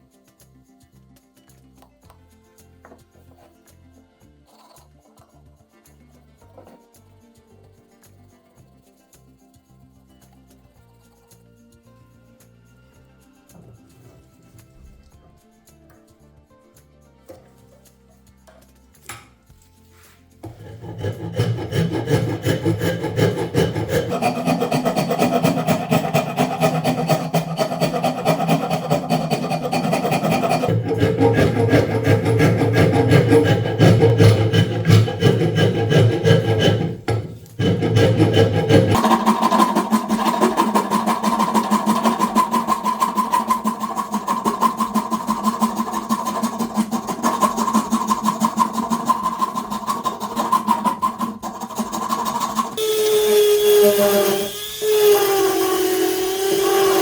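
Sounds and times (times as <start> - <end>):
rasping wood by hand: 20.4 - 57.0.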